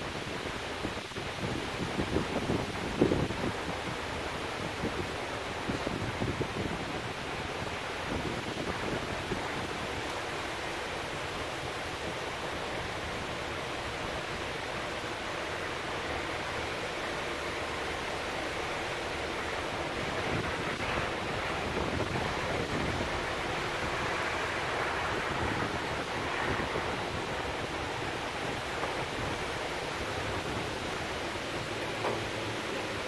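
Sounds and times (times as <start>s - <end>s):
heavy rain: 0.0s - 33.0s
raindrops on tin ledge: 0.0s - 33.0s
wind in tree leaves: 0.0s - 33.0s.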